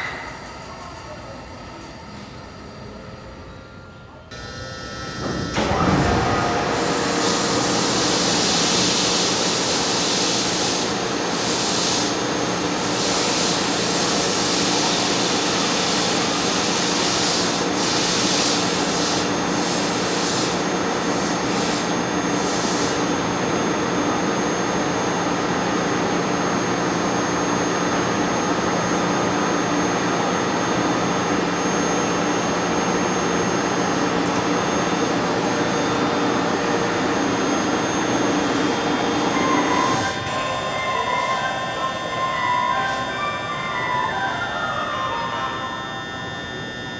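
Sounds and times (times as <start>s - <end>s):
air compressor drone: 0.0s - 46.9s
held whining tones: 1.4s - 11.4s, 31.6s - 46.9s.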